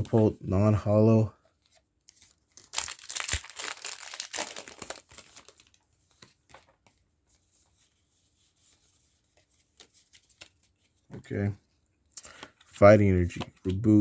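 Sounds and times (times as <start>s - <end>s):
cards rustling and clicking: 1.5s - 7.9s, 9.1s - 11.3s, 12.1s - 13.9s
foil wrapper tearing and crinkling: 2.5s - 5.8s.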